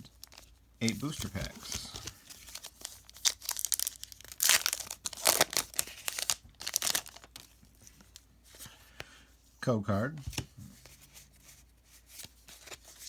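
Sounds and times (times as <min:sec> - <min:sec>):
foil wrapper crinkling and tearing: 0:00.0 - 0:08.2.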